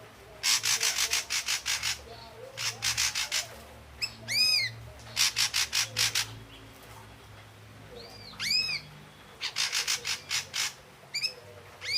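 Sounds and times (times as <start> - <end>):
bird harsh rasping calls: 0.4 - 6.4, 8.4 - 11.9.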